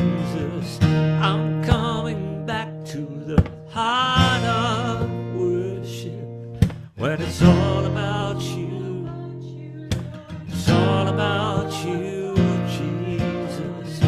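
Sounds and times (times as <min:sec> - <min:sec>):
strummed acoustic guitar: 0:00.0 - 0:14.0
person singing wavering notes: 0:07.0 - 0:14.0.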